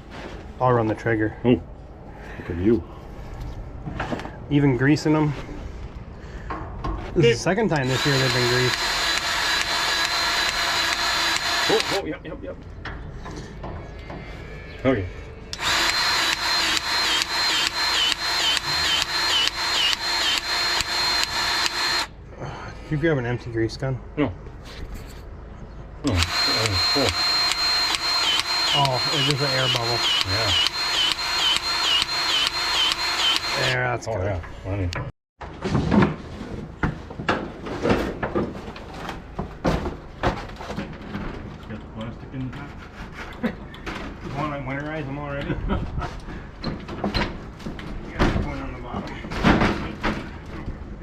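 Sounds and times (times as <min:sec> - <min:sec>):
grease gun motor pumping: 0:07.8 - 0:12.0, 0:15.6 - 0:22.1, 0:26.1 - 0:33.8.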